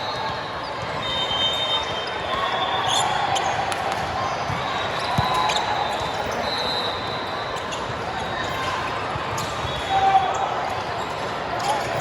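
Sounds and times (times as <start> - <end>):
murmur of spectators' voices: 0.0 - 12.0.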